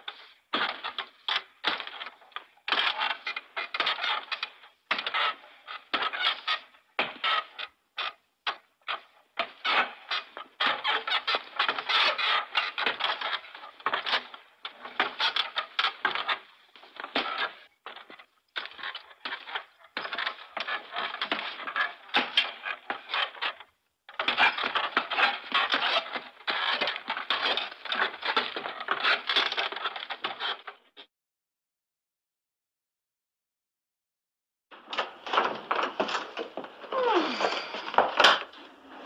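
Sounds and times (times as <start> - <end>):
footsteps on wooden boards: 8.9 - 30.8, 34.8 - 39.0.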